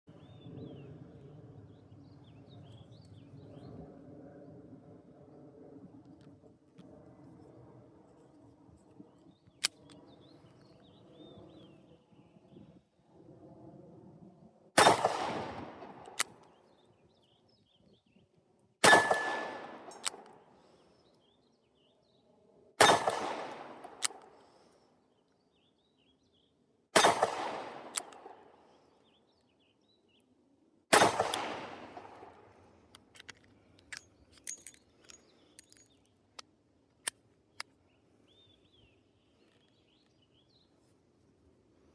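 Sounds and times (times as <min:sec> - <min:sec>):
revolver shots with echo: 0:18.8 - 0:20.1, 0:22.8 - 0:24.0, 0:27.0 - 0:28.4, 0:30.9 - 0:32.3.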